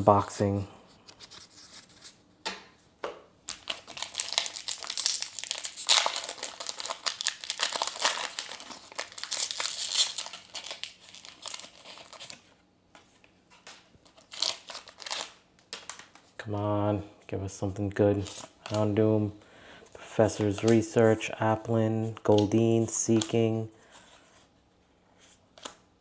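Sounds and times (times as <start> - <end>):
foil wrapper crinkling and tearing: 3.5 - 12.5, 14.1 - 16.2.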